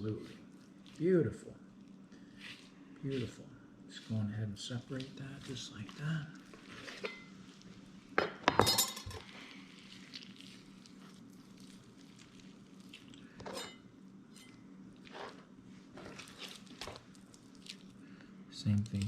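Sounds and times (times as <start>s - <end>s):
wet meat handling sounds: 0.0s - 3.4s, 9.2s - 13.4s, 14.0s - 19.0s.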